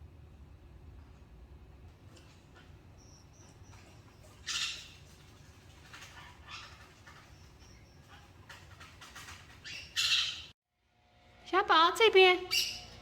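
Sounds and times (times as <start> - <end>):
soft bird calls and chirps: 3.0 - 5.2, 5.9 - 10.5
bird squawking: 3.1 - 5.1, 6.1 - 10.5.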